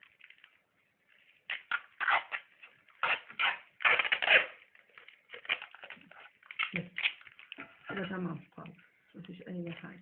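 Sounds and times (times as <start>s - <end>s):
plastic bag and tape crinkling: 0.0s - 10.0s.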